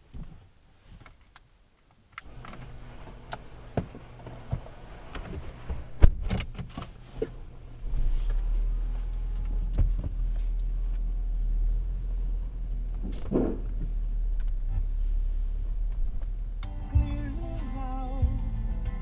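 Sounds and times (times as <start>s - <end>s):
deep steady rumble: 2.2s - 19.0s
steady low hum: 2.2s - 19.0s
sharp thump: 13.0s - 13.9s.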